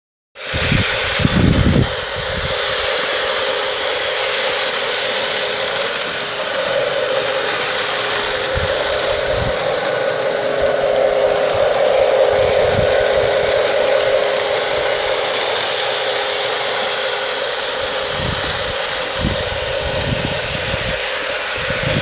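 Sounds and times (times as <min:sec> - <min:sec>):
model locomotive whirring hum: 0:00.4 - 0:22.0
wind buffeting microphone: 0:00.5 - 0:03.2, 0:06.6 - 0:15.8, 0:17.7 - 0:22.0.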